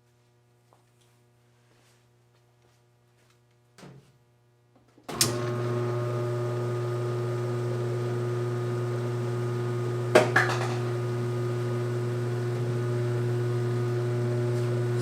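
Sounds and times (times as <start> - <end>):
washing machine motor humming: 5.1 - 15.0.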